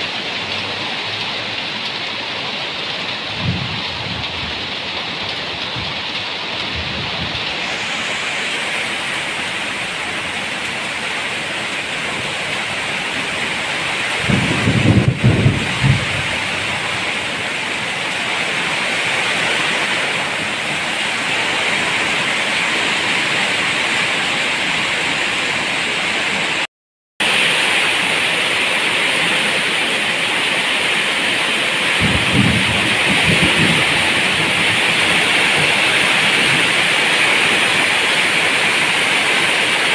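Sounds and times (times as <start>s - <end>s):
heavy rain: 0.0s - 39.9s
low rumbles of thunder: 3.3s - 4.7s, 6.6s - 7.5s, 14.2s - 17.1s, 31.9s - 37.0s.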